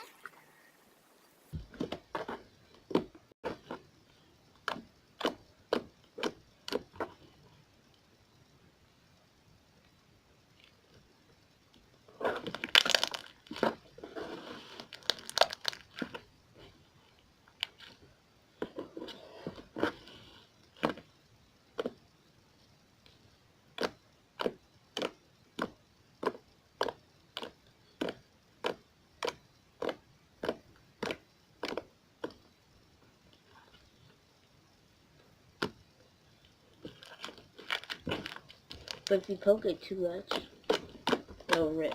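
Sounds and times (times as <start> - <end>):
slime squishing and crackling: 12.4 - 13.8, 14.8 - 16.2, 36.8 - 39.4.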